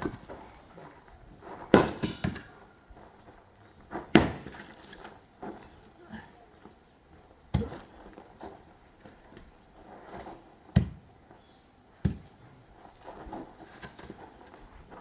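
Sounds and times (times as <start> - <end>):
axe splitting log: 0.0 - 0.7.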